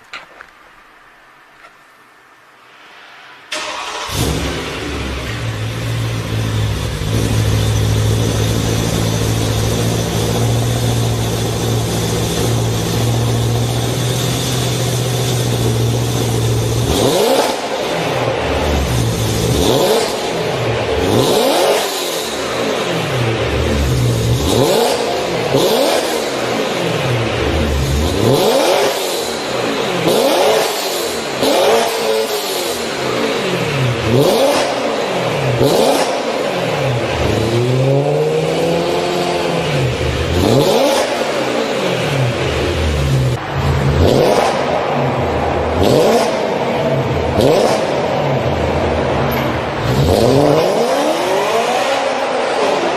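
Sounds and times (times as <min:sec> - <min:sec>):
car engine idling and revving: 0:03.5 - 0:52.9.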